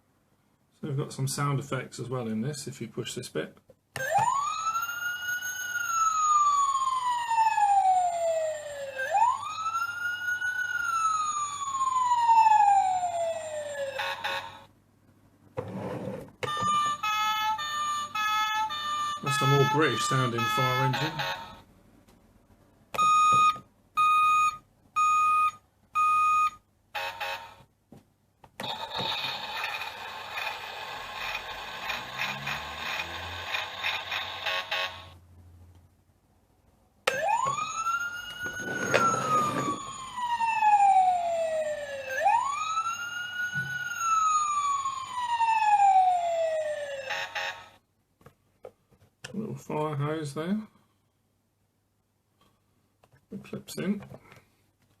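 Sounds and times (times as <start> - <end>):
toy siren wailing: 4.0 - 14.7, 16.4 - 21.6, 37.1 - 47.8.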